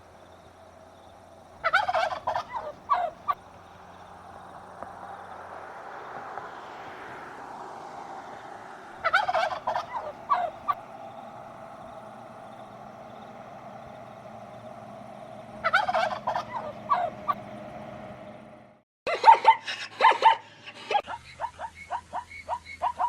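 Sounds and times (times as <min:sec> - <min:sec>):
background hum: 0:00.0 - 0:18.8
fowl warbling calls: 0:01.6 - 0:04.3, 0:09.0 - 0:18.0.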